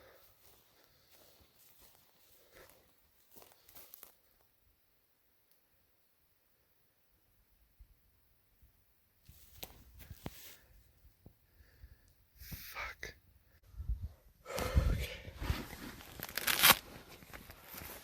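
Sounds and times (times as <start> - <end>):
rustling and crunching handling: 0.4 - 4.4, 15.5 - 18.0.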